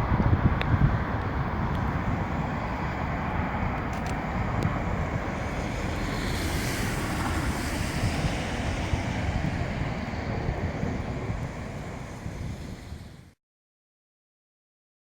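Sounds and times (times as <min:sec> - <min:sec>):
storm wind buffeting microphone: 0:00.0 - 0:13.4
rain rushing: 0:01.7 - 0:13.3.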